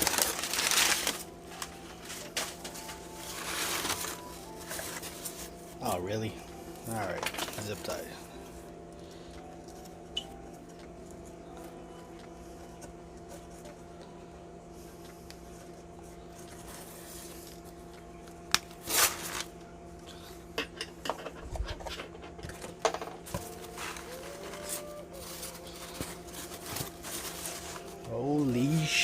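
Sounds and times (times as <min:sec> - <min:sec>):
packaging rustling: 0:00.0 - 0:05.8, 0:06.9 - 0:08.2, 0:18.6 - 0:19.6, 0:23.2 - 0:29.0.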